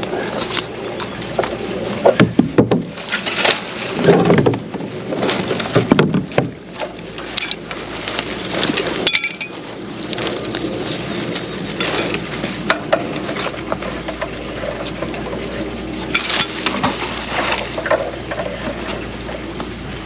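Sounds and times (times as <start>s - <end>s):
equipment knocking and clinking: 5.7s - 7.7s, 9.0s - 9.6s, 11.8s - 14.4s.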